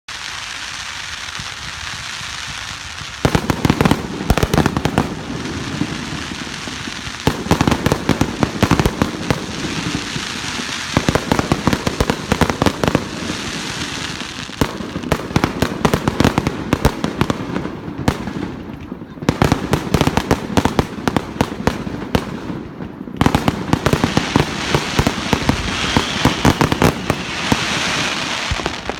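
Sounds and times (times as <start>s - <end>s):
fireworks banging and crackling: 0.1s - 28.9s.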